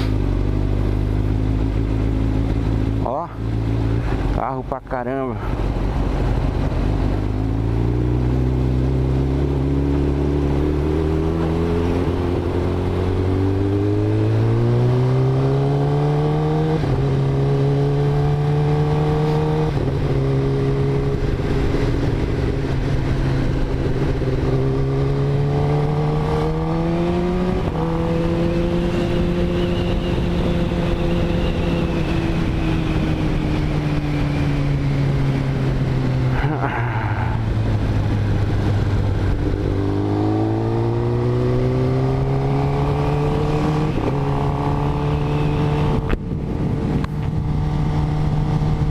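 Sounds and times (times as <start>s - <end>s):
motorcycle engine accelerating: 0.0s - 4.5s, 5.6s - 48.9s
wind rush: 0.0s - 48.9s.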